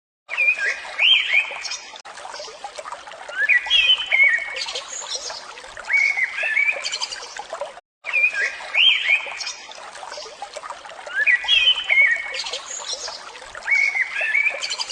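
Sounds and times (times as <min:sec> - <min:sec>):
birds singing whistled phrases: 0:00.3 - 0:01.9, 0:03.3 - 0:07.3, 0:08.0 - 0:10.3, 0:11.1 - 0:14.9
water trickling: 0:00.3 - 0:14.9.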